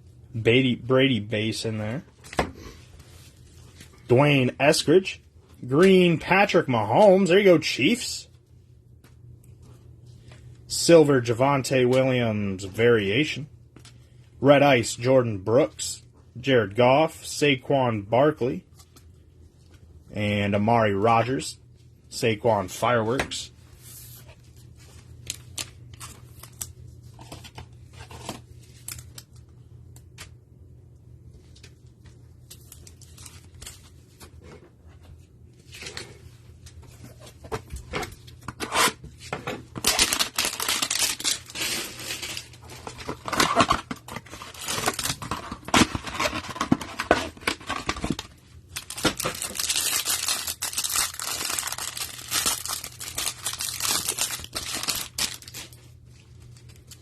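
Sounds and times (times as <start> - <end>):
cardboard and plastic tearing: 39.7 - 55.8.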